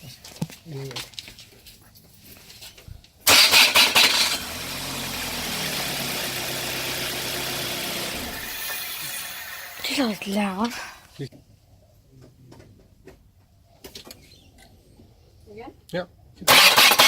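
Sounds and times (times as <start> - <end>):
car engine idling: 3.2 - 11.2
starter motor cranking: 3.3 - 11.2, 16.5 - 17.0.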